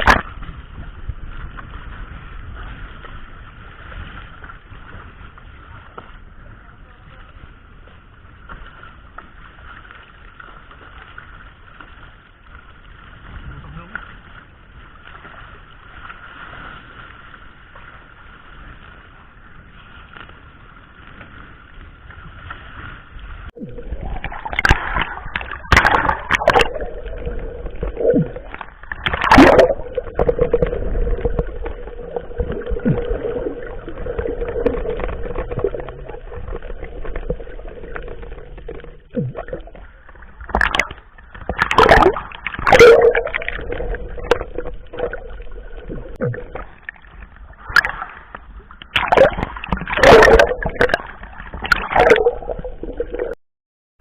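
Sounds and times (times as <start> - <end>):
sharp splashes and knocks: 0.0 - 6.2, 21.0 - 53.4
water splashing around boat: 0.0 - 53.4.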